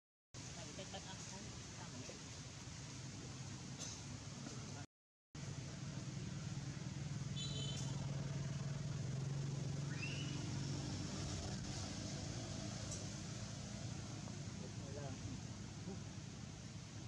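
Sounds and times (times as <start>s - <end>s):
outdoor background noise: 0.4s - 17.0s
vehicle engine humming: 5.4s - 17.0s.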